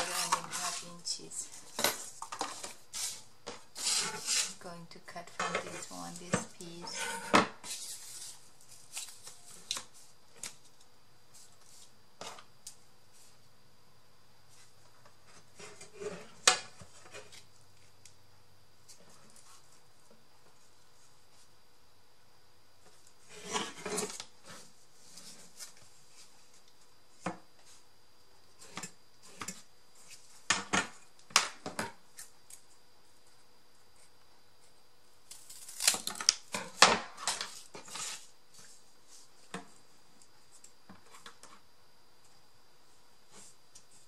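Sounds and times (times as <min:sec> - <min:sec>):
cardboard being cut: 0:03.8 - 0:04.6.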